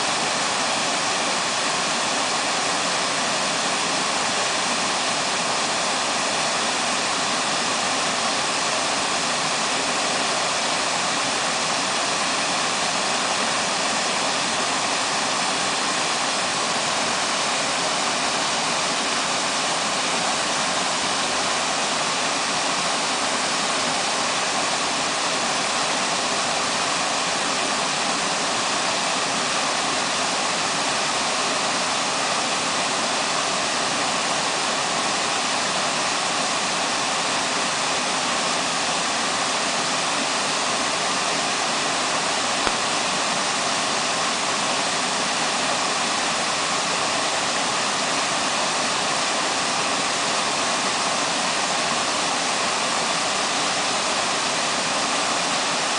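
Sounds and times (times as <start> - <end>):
waterfall rushing: 0.0 - 55.9.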